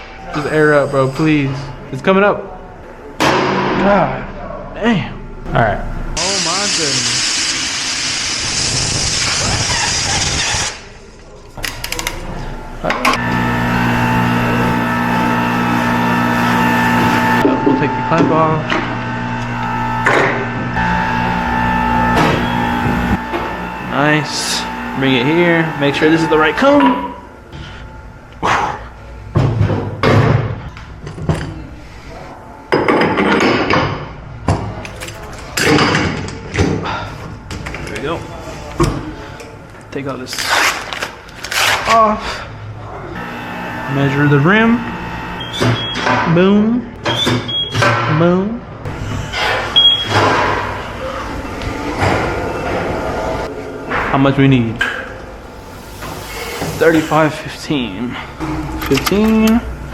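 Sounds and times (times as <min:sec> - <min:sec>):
electric motor humming: 0:12.1 - 0:27.5, 0:43.2 - 0:46.4
compressed air hissing: 0:55.4 - 0:57.6.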